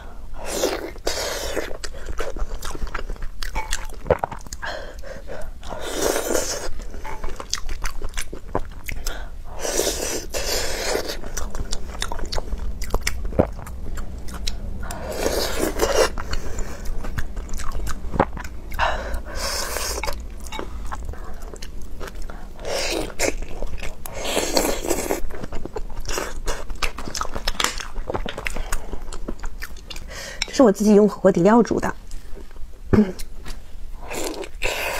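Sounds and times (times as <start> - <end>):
wet chewing and biting: 0.5 - 30.1
breathy swell: 10.2 - 24.3.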